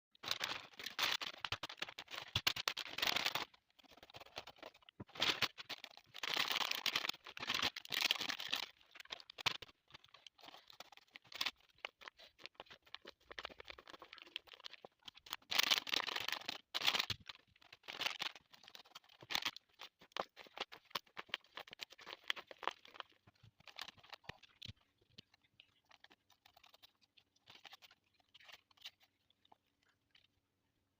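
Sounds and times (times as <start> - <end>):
paper bag crinkling: 0.2 - 9.6, 10.4 - 19.6.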